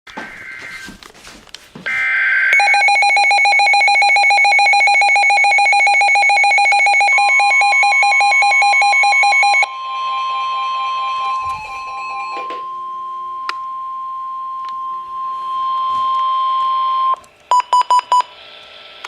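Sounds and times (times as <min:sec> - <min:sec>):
steady electronic tone: 0:09.4 - 0:17.2.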